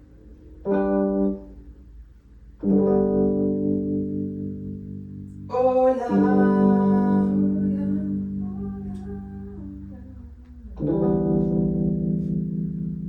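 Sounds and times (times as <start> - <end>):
chords ringing: 0.0 - 13.0.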